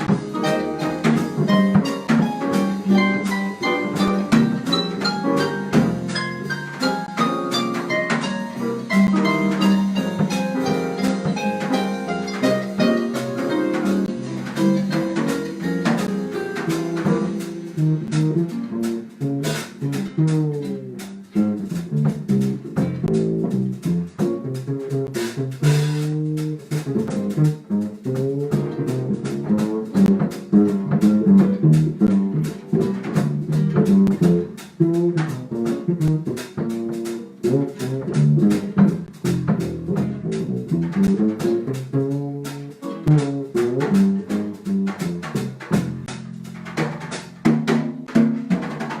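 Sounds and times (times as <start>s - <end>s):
bass: 0.0s - 49.0s
light drums: 0.0s - 49.0s
plucked-string melody and chords: 42.8s - 43.2s.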